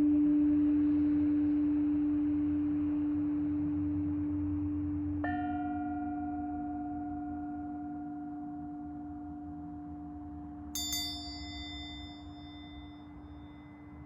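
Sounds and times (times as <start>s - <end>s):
low ringing tone: 4.6s - 14.0s
higher struck ringing tone: 5.2s - 14.0s.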